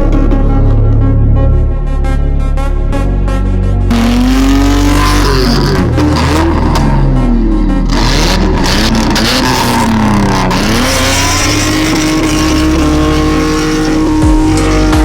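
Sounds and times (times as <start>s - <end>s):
car engine revving hard: 3.9s - 15.0s.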